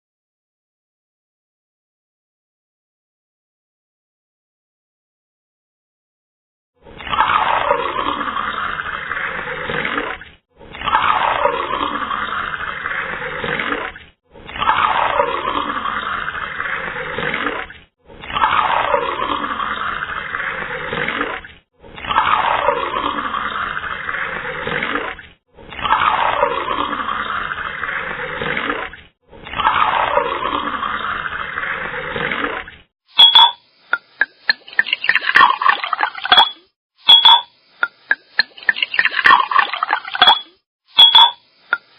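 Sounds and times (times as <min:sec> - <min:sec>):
water pouring into a cup: 0:06.8 - 0:32.8, 0:34.0 - 0:36.7, 0:37.3 - 0:41.9
sharp clinks in a glass: 0:33.2 - 0:33.6, 0:36.3 - 0:37.5, 0:40.2 - 0:41.4.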